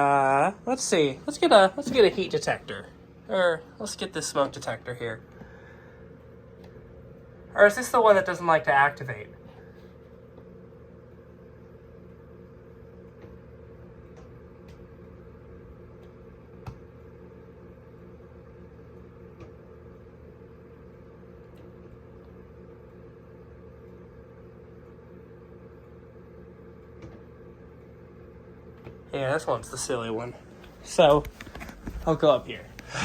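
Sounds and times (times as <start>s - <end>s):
steady low hum: 0.0s - 33.0s.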